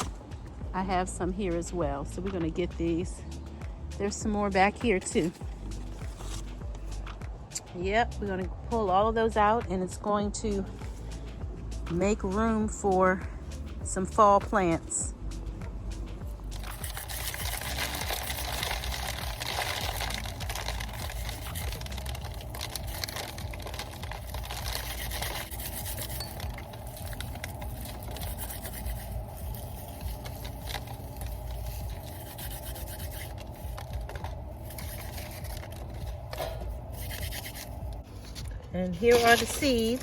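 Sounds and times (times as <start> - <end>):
dry plant stalks rustling and crackling: 16.6 - 40.0.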